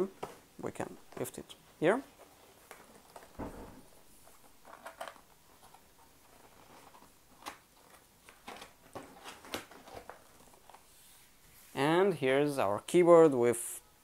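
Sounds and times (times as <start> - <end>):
packaging rustling: 0.1 - 10.9.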